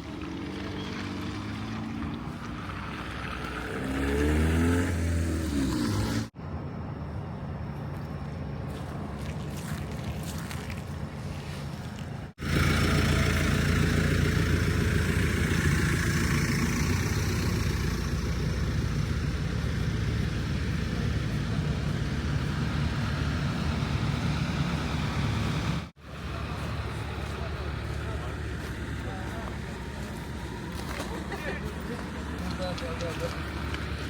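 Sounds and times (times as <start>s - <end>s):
engine humming steadily: 0.0s - 34.0s.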